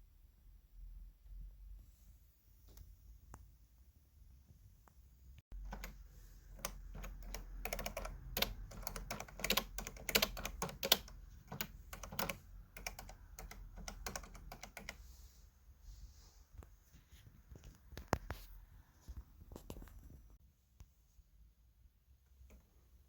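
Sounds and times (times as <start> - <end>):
typewriter keys clicking: 5.6 - 6.0, 6.6 - 15.0.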